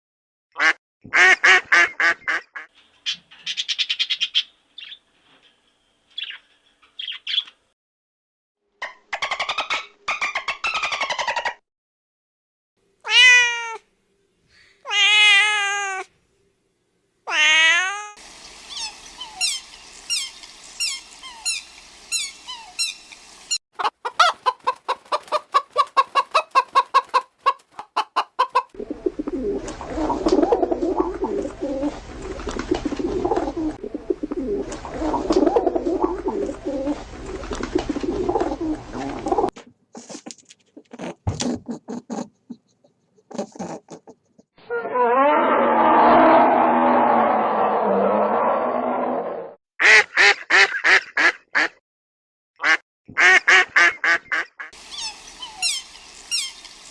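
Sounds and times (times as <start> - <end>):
meow-like cries: 13.0 - 13.9, 14.8 - 16.1, 17.3 - 18.9
animal chirps: 18.7 - 23.2, 54.9 - 56.7
rough noisy animal calling: 44.6 - 49.4.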